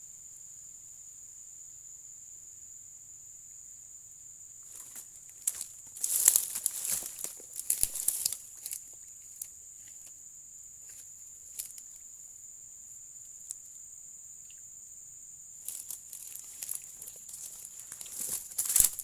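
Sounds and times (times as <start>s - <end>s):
crackly rustling: 4.6s - 10.2s, 10.8s - 12.1s, 15.6s - 19.0s
insects shrilling: 4.6s - 14.8s, 15.5s - 19.0s.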